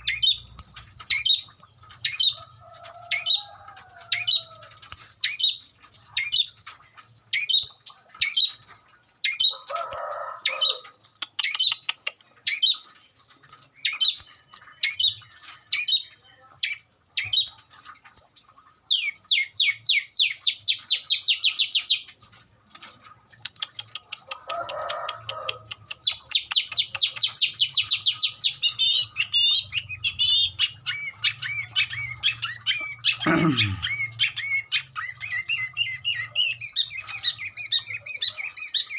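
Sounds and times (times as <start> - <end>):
bird singing: 0.0 - 2.5, 13.7 - 17.6, 26.2 - 38.9
harsh bird rasps: 25.9 - 38.9.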